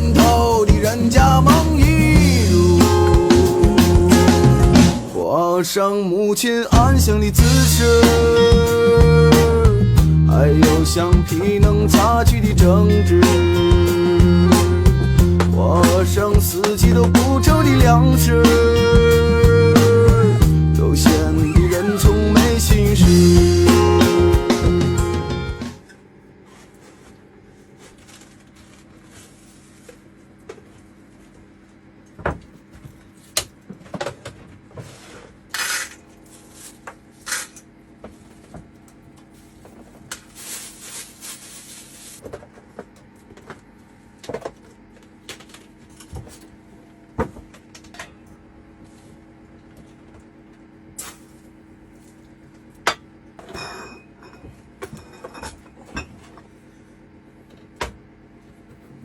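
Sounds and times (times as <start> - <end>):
steady low hum: 0.0 - 5.5, 6.8 - 59.0
rustling: 39.3 - 42.2
dishes and containers clinking: 52.9 - 56.5.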